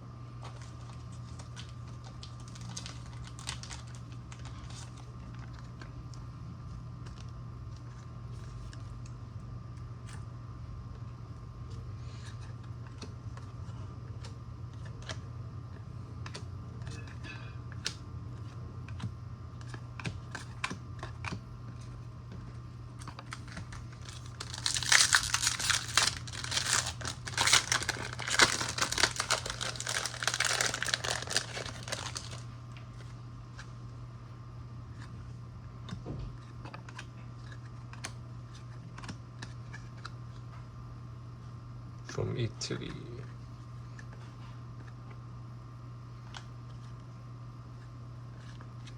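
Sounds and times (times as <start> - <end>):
steady low hum: 0.0 - 48.9
foil wrapper crinkling and tearing: 0.8 - 5.5, 23.0 - 32.5
trading cards being handled: 23.0 - 32.4.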